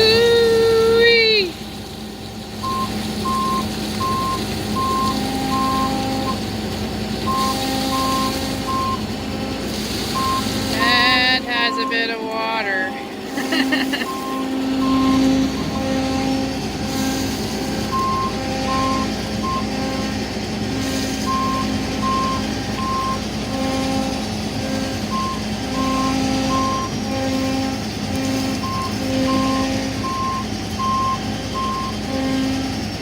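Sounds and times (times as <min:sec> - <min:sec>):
combine engine hum: 0:00.0 - 0:33.0
backup alarm beeps: 0:02.6 - 0:06.4, 0:07.2 - 0:09.1, 0:10.1 - 0:16.0, 0:17.9 - 0:19.7, 0:21.2 - 0:23.2, 0:25.1 - 0:27.0, 0:28.6 - 0:32.0.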